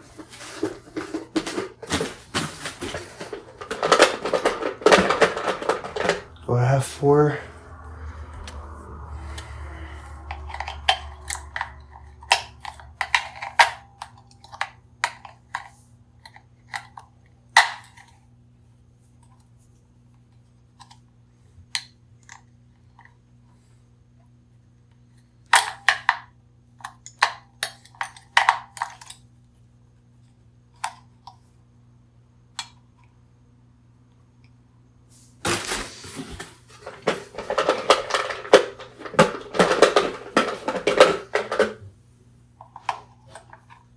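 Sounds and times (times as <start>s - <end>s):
clattering and rustling: 0.0s - 6.5s, 35.4s - 41.9s.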